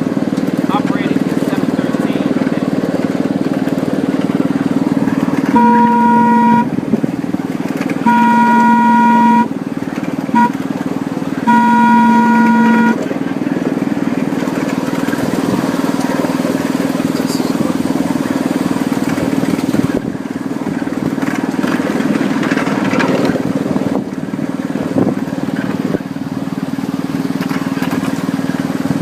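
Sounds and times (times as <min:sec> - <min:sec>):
small engine running: 0:00.0 - 0:29.0
locomotive horn blowing: 0:05.4 - 0:06.9, 0:08.0 - 0:09.6, 0:10.2 - 0:10.8, 0:11.4 - 0:13.2.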